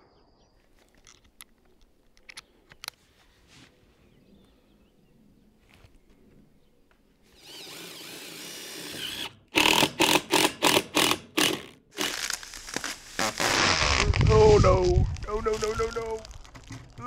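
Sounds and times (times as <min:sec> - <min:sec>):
power driver loud rapid bursts: 0:07.4 - 0:12.2.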